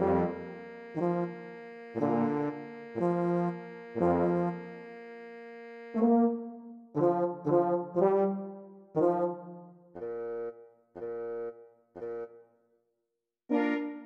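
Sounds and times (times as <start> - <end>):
low brass instruments playing: 0.0 - 4.8, 7.0 - 9.6.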